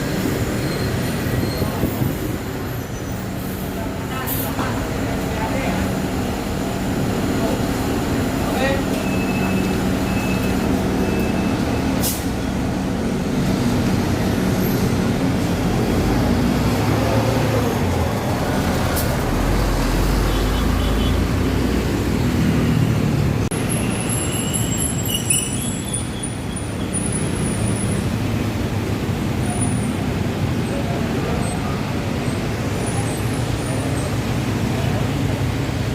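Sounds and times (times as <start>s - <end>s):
heavy vehicle rumbling past: 0.0s - 23.7s
bus engine running: 0.0s - 24.2s
street traffic: 0.0s - 35.9s.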